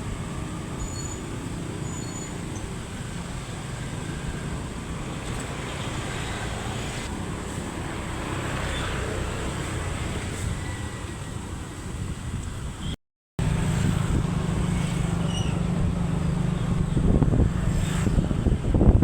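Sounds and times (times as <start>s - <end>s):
road traffic rumble: 0.0s - 19.0s
wind noise on microphone: 9.2s - 19.0s.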